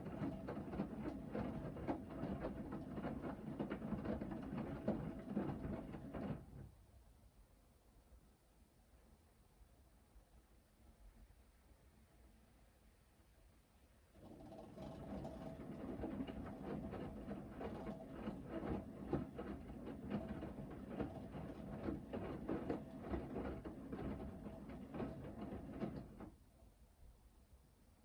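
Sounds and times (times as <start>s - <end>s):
washing machine motor hum: 0.0s - 6.3s, 14.2s - 26.2s
laundry tumbling in washing machine: 0.0s - 6.7s, 14.2s - 26.4s.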